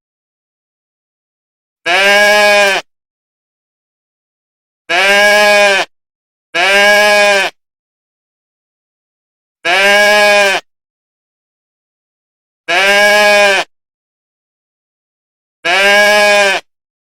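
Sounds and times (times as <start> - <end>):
goat bleating: 1.8 - 2.9, 4.9 - 5.9, 6.6 - 7.6, 9.6 - 10.7, 12.7 - 13.7, 15.6 - 16.7.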